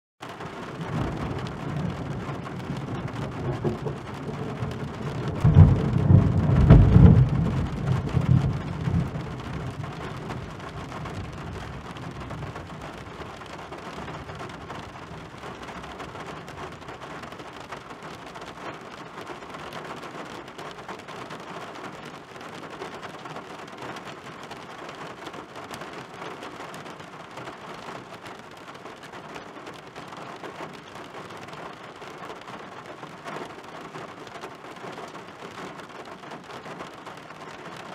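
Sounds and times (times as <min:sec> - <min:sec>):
heavy rain on a windshield: 0:00.2 - 0:37.9
thunder rumbling: 0:00.4 - 0:17.2.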